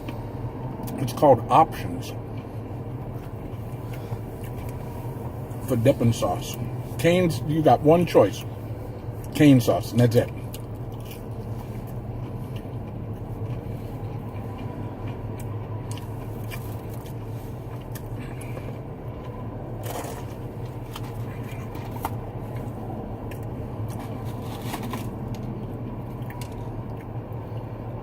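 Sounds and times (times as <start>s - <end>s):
chewing crunchy food: 2.1s - 5.6s, 10.3s - 27.9s.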